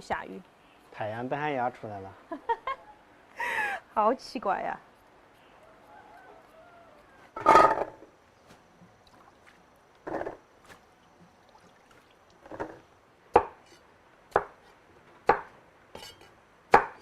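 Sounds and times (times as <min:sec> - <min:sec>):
knife chopping on cutting board: 0:14.3 - 0:14.7, 0:15.3 - 0:15.5, 0:16.1 - 0:17.0.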